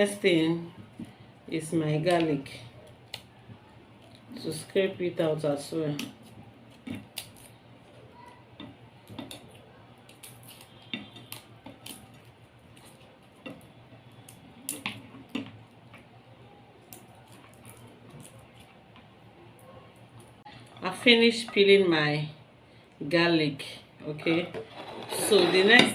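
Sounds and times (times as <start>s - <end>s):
garlic skin scraping clicks: 5.9s - 7.5s.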